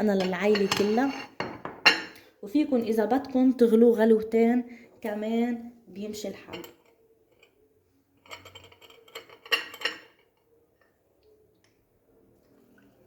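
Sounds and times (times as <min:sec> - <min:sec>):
cups and utensils clinking: 0:00.0 - 0:02.2, 0:06.4 - 0:07.6, 0:08.2 - 0:10.5.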